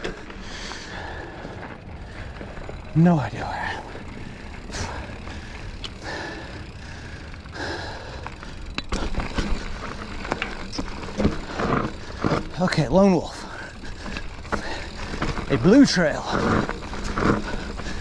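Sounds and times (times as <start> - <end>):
person breathing hard: 0.0 - 2.5, 3.7 - 9.6, 13.4 - 15.4
bike rattling: 0.0 - 18.0
bike rolling on dirt trail: 0.0 - 18.0.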